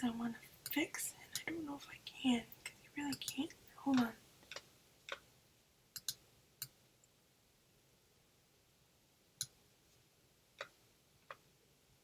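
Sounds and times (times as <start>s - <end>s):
computer mouse clicks: 3.1s - 3.4s, 6.0s - 6.8s.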